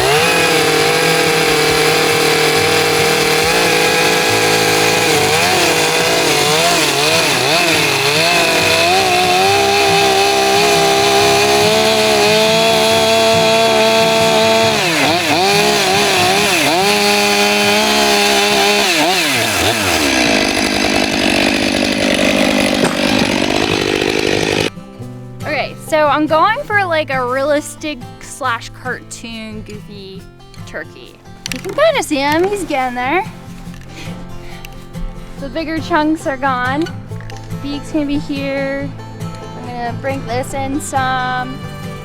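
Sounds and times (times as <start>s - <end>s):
chainsaw cutting log: 0.0s - 24.7s, 31.3s - 34.7s.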